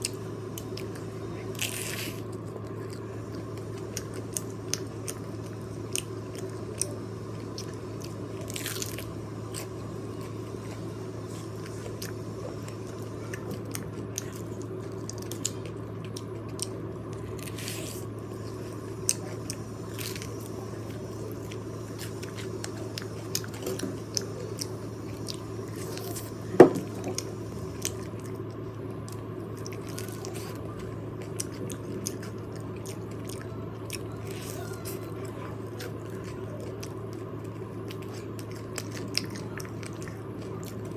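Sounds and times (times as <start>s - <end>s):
low hum: 0.0s - 40.9s
person chewing crispy chicken: 0.0s - 40.9s.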